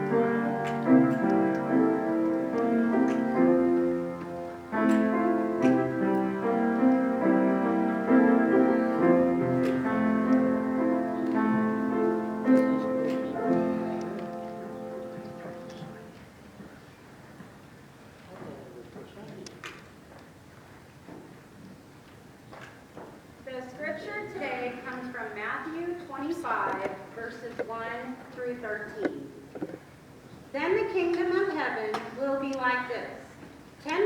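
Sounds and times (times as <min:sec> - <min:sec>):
solo piano slow chords: 0:00.0 - 0:16.2.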